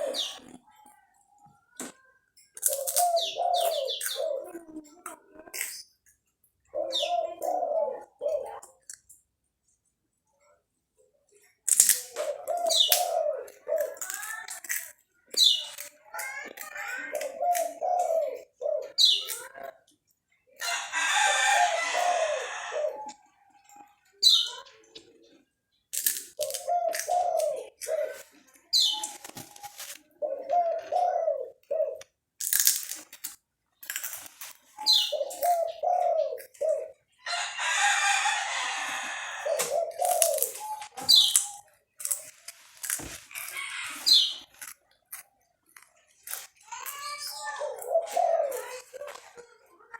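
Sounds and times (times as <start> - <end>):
chickens calling: 0.0 - 0.6, 2.6 - 4.8, 6.7 - 8.6, 12.1 - 19.7, 20.5 - 32.1, 34.7 - 44.7, 46.0 - 49.9
small bird chirping: 0.0 - 0.8, 2.4 - 4.5, 12.4 - 14.4, 15.2 - 19.6, 23.8 - 31.0, 34.6 - 37.2, 39.5 - 42.3, 43.3 - 44.6.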